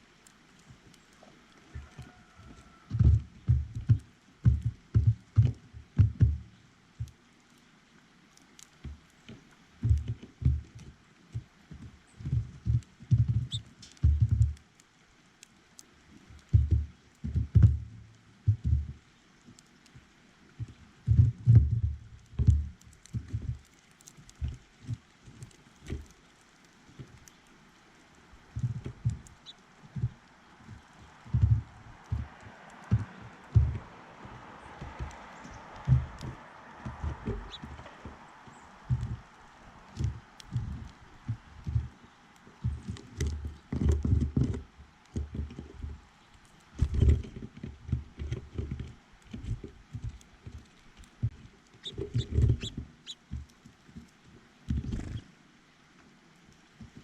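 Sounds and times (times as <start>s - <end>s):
birds tapping on feeder: 0.6s - 7.2s, 8.6s - 14.6s, 16.3s - 19.6s, 20.6s - 55.3s
faint bird chirp: 51.8s - 53.2s.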